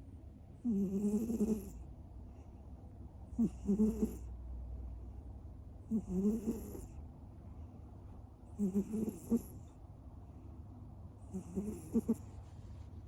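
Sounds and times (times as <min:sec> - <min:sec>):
cat snoring: 0:00.6 - 0:01.8, 0:03.3 - 0:04.3, 0:05.9 - 0:07.0, 0:08.6 - 0:09.7, 0:11.2 - 0:12.4.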